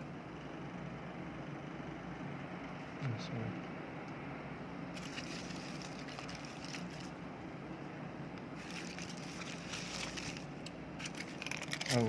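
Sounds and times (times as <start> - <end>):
steady low hum: 0.0 - 12.0
foil sheets crinkling: 5.0 - 7.2, 8.6 - 12.0.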